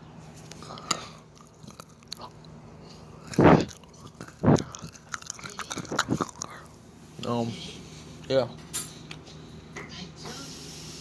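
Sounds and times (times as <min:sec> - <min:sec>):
chewing chocolate: 0:00.5 - 0:06.8
loud crunches: 0:03.2 - 0:06.6.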